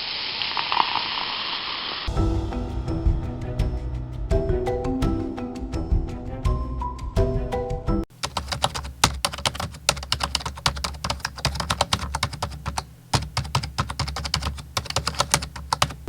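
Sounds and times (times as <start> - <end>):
fast typing on keyboard: 8.1 - 16.0.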